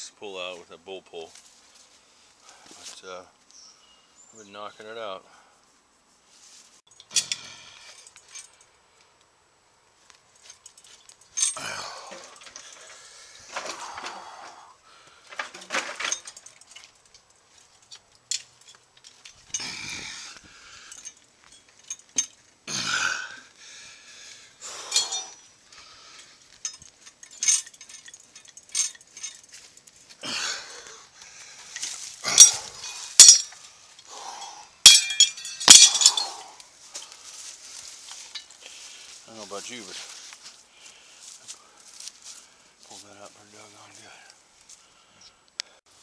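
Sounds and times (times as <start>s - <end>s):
jack and chain metal clinks: 6.9s - 8.7s, 10.4s - 14.0s, 15.3s - 19.9s, 20.8s - 22.4s, 24.7s - 25.4s, 26.2s - 30.0s, 31.6s - 33.7s, 34.4s - 37.1s.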